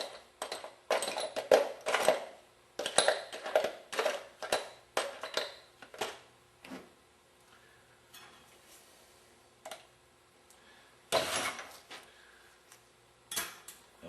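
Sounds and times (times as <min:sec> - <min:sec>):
metal parts clinking in a can: 0:00.0 - 0:06.1.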